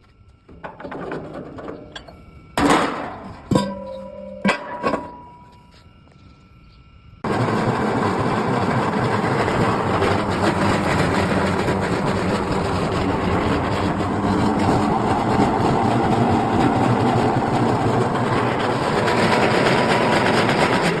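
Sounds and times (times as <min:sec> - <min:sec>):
feed-processing machine running: 0:07.2 - 0:21.0.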